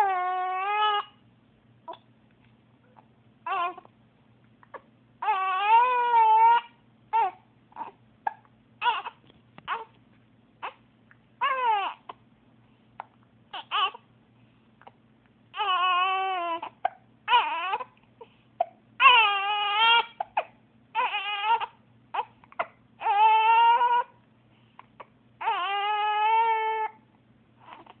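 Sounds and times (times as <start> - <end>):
baby crying: 0.0 - 1.2, 3.4 - 3.9, 4.7 - 9.9, 11.4 - 12.2, 13.5 - 14.1, 15.5 - 18.0, 19.0 - 24.2, 24.8 - 27.0, 27.6 - 28.0.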